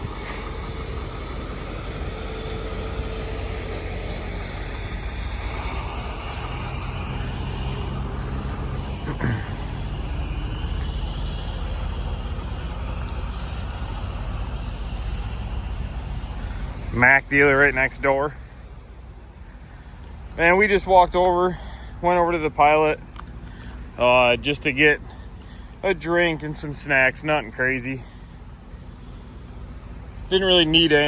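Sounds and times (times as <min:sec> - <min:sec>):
diesel truck engine droning: 0:00.0 - 0:31.0
yard noise: 0:17.2 - 0:31.0.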